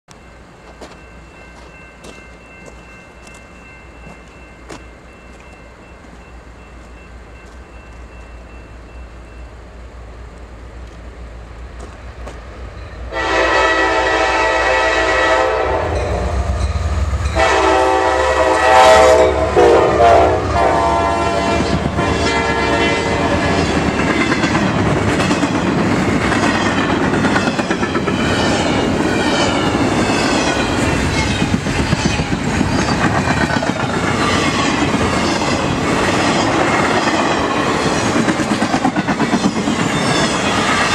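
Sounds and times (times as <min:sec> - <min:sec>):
diesel locomotive rumble: 0:00.1 - 0:40.9
locomotive air horn blasts: 0:13.1 - 0:16.6, 0:17.3 - 0:23.3
train wheels clacking on rails: 0:20.8 - 0:40.9.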